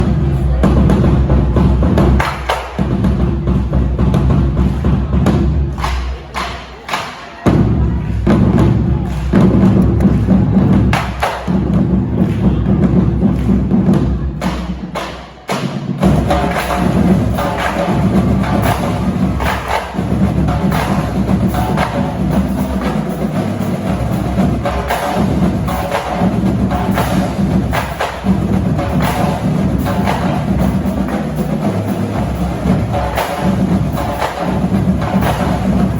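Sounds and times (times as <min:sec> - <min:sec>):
snare drum strikes: 0:02.0 - 0:03.0, 0:13.3 - 0:35.9.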